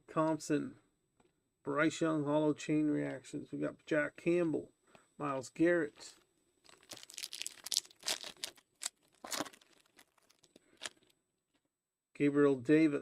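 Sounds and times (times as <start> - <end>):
cards rustling: 6.0 - 11.0
foil card pack tearing: 6.7 - 11.0
wrapper crinkling: 6.7 - 11.1.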